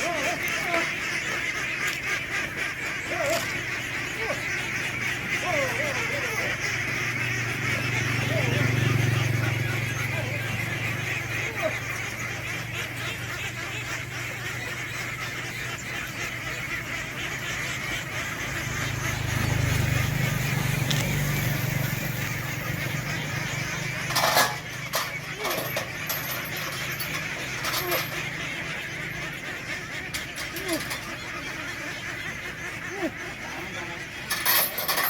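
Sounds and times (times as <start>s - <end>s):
ducks quacking: 0.0s - 35.0s
sharp clatter: 23.7s - 28.3s, 34.3s - 35.0s.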